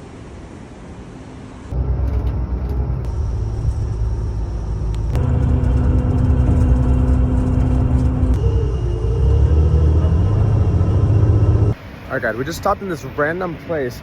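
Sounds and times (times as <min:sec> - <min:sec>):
steady hum: 0:01.6 - 0:14.0
vehicle engine low rumble: 0:01.7 - 0:12.0.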